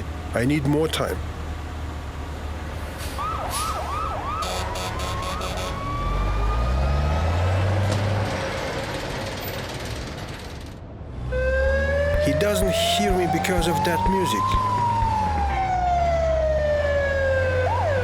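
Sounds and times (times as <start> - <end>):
cartoon police siren warbling: 3.2 - 7.2, 11.4 - 18.0.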